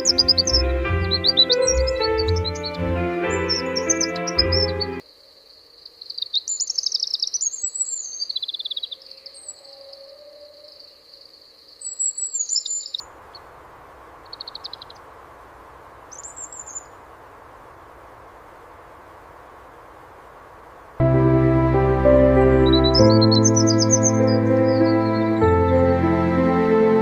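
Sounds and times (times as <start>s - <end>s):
small bird chirping: 0.0s - 5.0s, 5.8s - 13.5s, 14.2s - 15.1s, 16.1s - 17.0s, 22.6s - 25.4s
outdoor background hiss: 0.0s - 27.0s.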